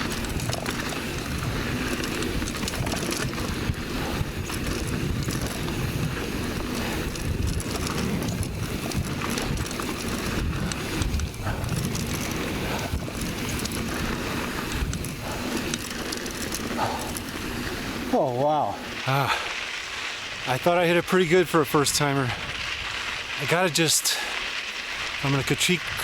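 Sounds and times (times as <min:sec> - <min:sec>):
wind buffeting microphone: 0:00.0 - 0:19.3
bike clattering over bumps: 0:00.0 - 0:20.7
bike tyre rumble on dirt: 0:00.0 - 0:26.0.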